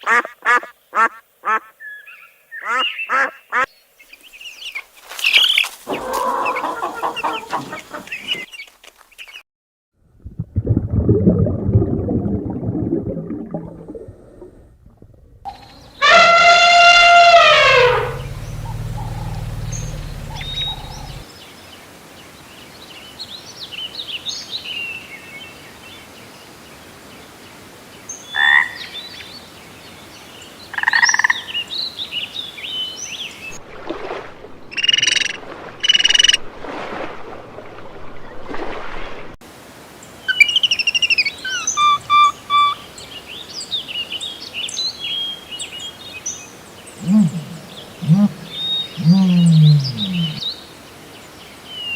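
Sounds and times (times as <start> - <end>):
frog croaks: 16.8 - 21.2, 47.0 - 50.4
chirps and trills: 16.9 - 21.2, 47.0 - 50.5
low hum: 16.9 - 21.2, 47.0 - 50.4.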